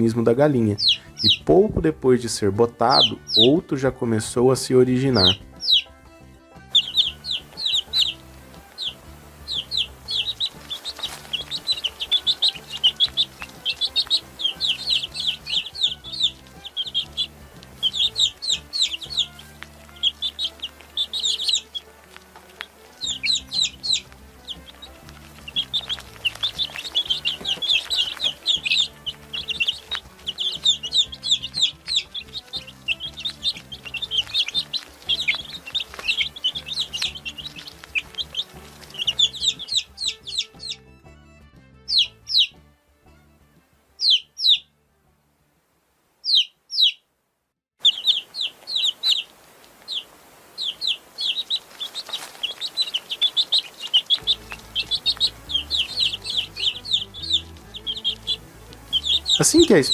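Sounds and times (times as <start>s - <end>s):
baby chicks peeping: 0.0s - 41.0s, 41.8s - 42.6s, 44.0s - 44.7s, 46.2s - 47.1s, 47.8s - 59.9s.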